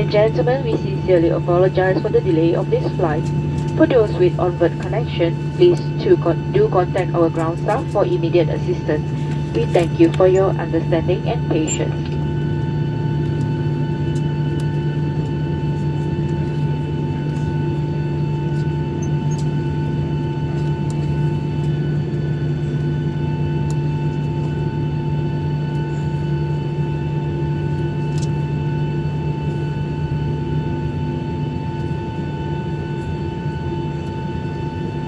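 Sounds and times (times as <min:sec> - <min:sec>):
airplane cabin hum: 0:00.0 - 0:35.0.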